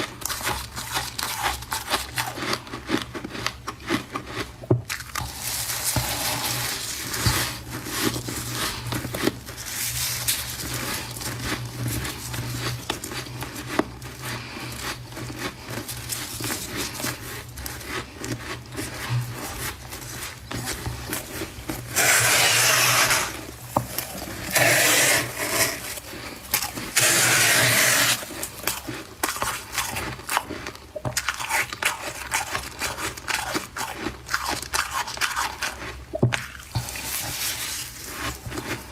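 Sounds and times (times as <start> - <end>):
frost crunching while eaten: 0.0 - 38.9
loud scraping: 21.9 - 23.5, 24.3 - 26.0, 27.0 - 28.2.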